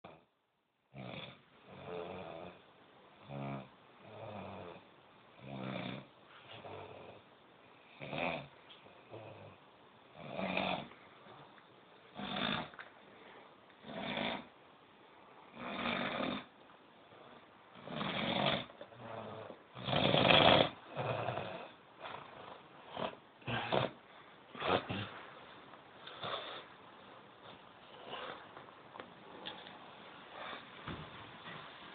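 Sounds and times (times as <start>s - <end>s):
heavy snoring: 0.9s - 2.6s, 3.2s - 4.8s, 5.4s - 7.2s, 7.9s - 9.6s, 10.2s - 10.9s, 12.1s - 12.8s, 13.8s - 14.5s, 15.5s - 16.5s, 17.8s - 25.2s.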